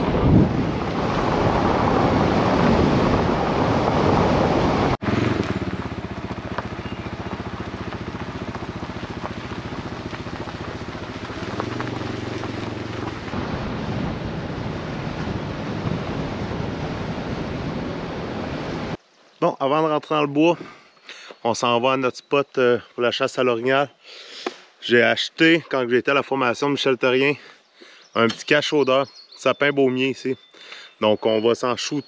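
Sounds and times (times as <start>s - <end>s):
wind noise on microphone: 0.0s - 5.6s, 8.9s - 19.0s
vehicle engine humming: 0.0s - 19.0s.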